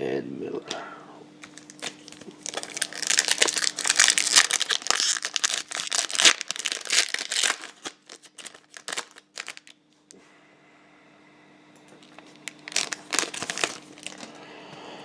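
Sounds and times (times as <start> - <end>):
card pack wrapper tearing and crinkling: 1.4 - 9.8, 12.2 - 14.3.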